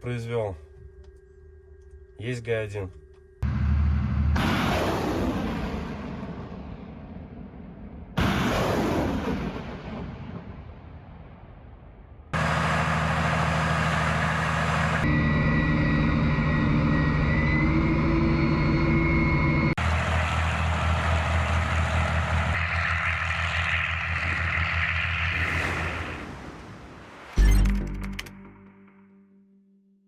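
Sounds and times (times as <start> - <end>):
truck diesel engine running: 3.4 - 4.5, 12.4 - 16.6, 19.8 - 25.4.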